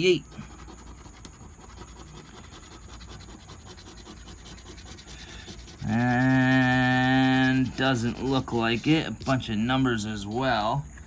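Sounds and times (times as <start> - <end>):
scratch-off ticket scraping: 0.0 - 10.8
man's voice holding a note: 5.8 - 10.9.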